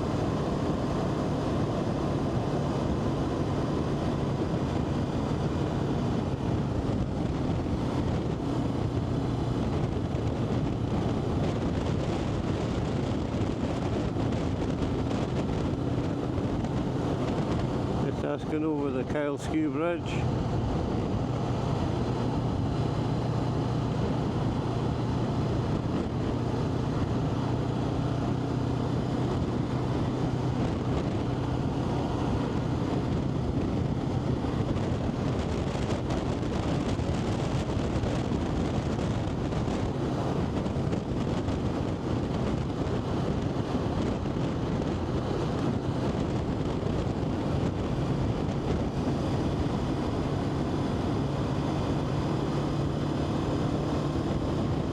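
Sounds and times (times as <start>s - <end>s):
vehicle engine running: 0.0s - 54.9s
wind rushing over microphone: 0.0s - 54.9s.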